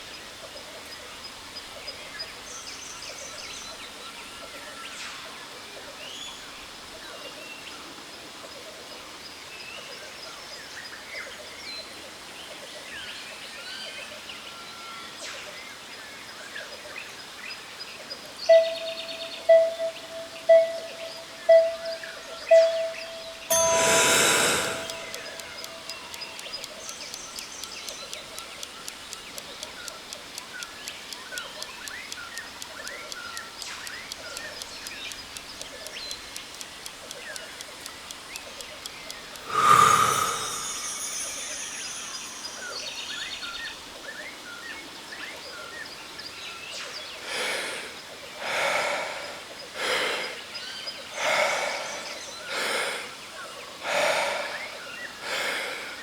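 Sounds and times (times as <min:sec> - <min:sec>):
deep forceful breaths: 0:23.5 - 0:26.0, 0:39.4 - 0:42.8, 0:47.3 - 0:50.4, 0:51.2 - 0:53.2
chime ringing: 0:23.5 - 0:26.3, 0:39.4 - 0:43.5
fast even ticking: 0:23.5 - 0:43.4.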